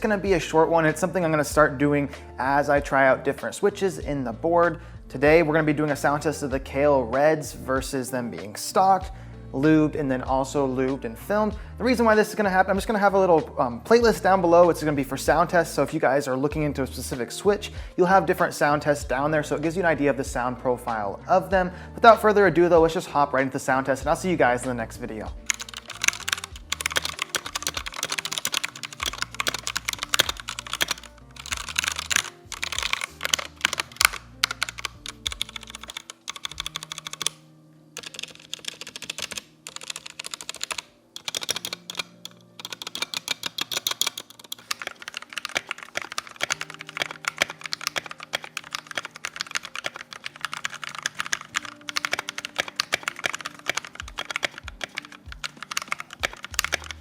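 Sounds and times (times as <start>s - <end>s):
soft background music: 0.0s - 57.0s
mechanical keyboard typing: 25.4s - 37.4s, 38.0s - 57.0s.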